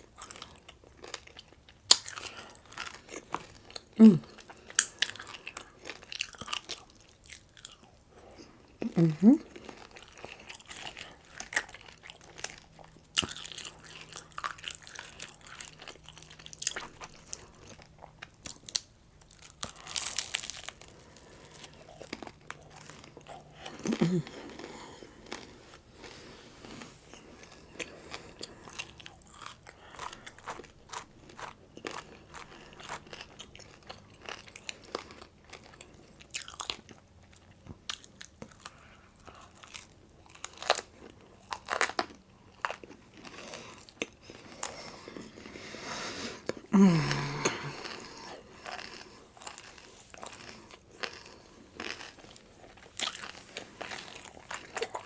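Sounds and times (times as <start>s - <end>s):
crunchy chewing: 0.0s - 8.8s, 9.4s - 55.0s
voice: 4.0s - 4.2s, 8.8s - 9.4s, 23.9s - 24.3s.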